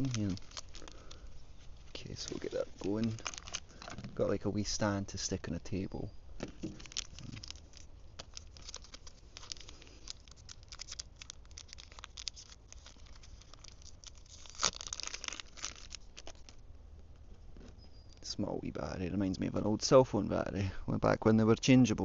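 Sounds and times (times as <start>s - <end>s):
packaging tearing and crinkling: 0.0s - 4.1s, 6.6s - 16.6s
plastic and card packaging rustling: 0.0s - 4.4s, 6.4s - 16.6s.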